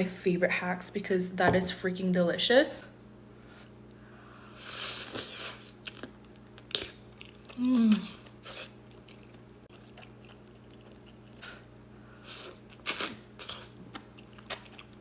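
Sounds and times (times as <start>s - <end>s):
person chewing food: 5.6s - 15.0s.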